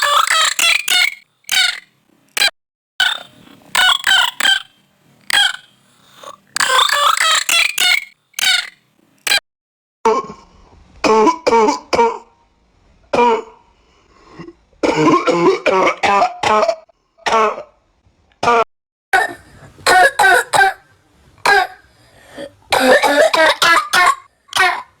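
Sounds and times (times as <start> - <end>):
person clearing throat: 13.2 - 13.6, 14.4 - 17.8, 22.4 - 24.9
person coughing: 14.4 - 17.7, 18.4 - 20.8, 21.5 - 21.8, 22.4 - 24.9.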